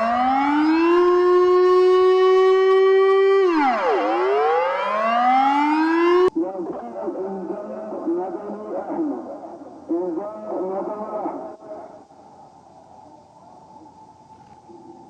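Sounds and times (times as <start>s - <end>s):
warning siren winding: 0.0s - 6.3s.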